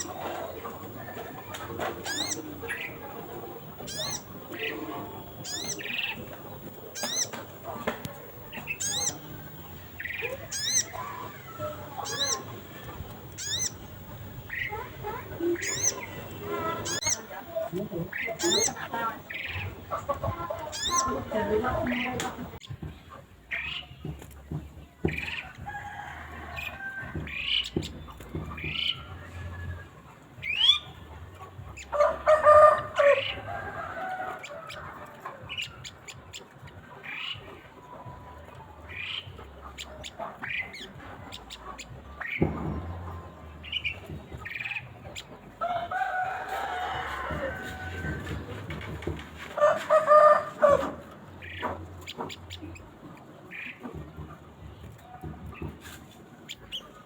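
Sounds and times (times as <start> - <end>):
bird chattering note: 3.8 - 19.9
bird calling sharp upward notes: 3.9 - 6.3
bird high contact call: 3.9 - 17.3.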